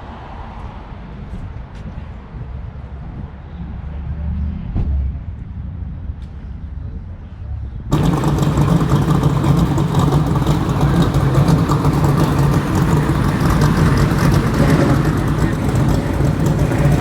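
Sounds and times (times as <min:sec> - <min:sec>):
car engine idling: 0:07.9 - 0:17.0.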